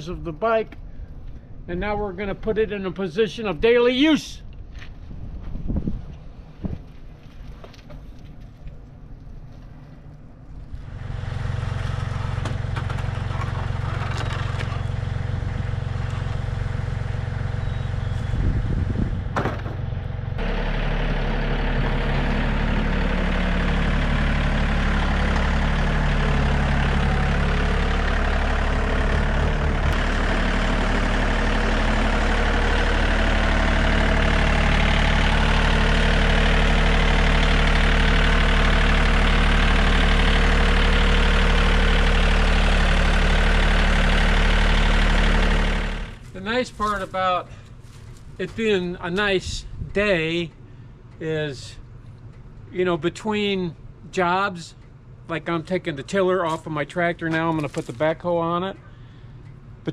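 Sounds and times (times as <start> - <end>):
vehicle engine running: 10.6 - 51.2.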